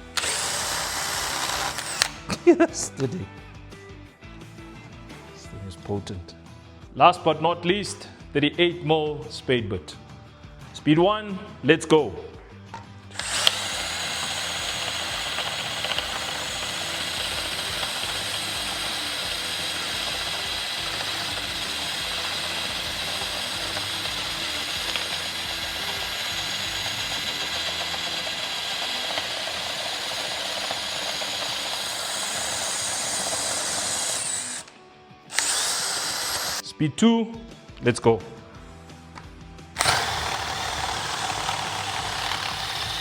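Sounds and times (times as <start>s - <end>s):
drill boring into wood: 0.0s - 2.4s, 13.1s - 36.6s, 39.8s - 43.0s.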